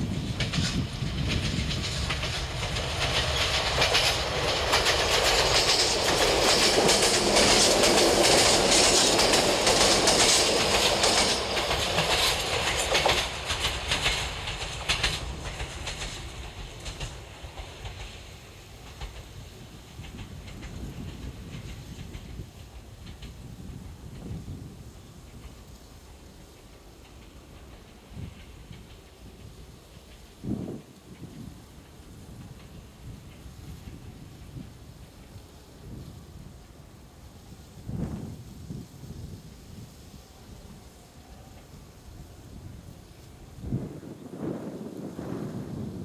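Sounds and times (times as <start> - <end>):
wheels clicking over rail joints: 0.0 - 36.1
diesel railcars passing: 0.0 - 46.0.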